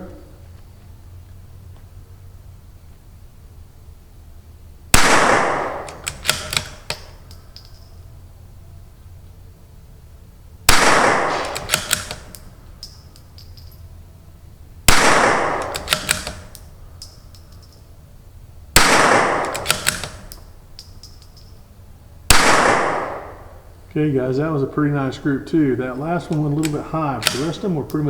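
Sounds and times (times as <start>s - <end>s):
rifle shots with echo: 4.9s - 7.2s, 10.7s - 12.5s, 14.9s - 16.6s, 18.8s - 20.4s, 22.3s - 23.7s, 26.0s - 28.0s
rifle bolt clicks: 5.3s - 7.9s, 10.8s - 13.8s, 14.9s - 17.8s, 18.8s - 21.5s, 26.3s - 28.0s.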